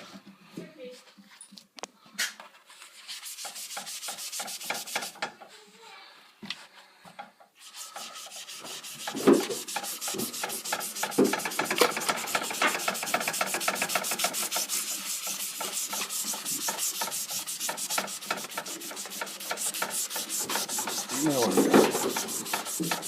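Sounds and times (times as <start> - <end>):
sponge scrubbing a surface: 2.8 - 5.2, 7.6 - 23.0.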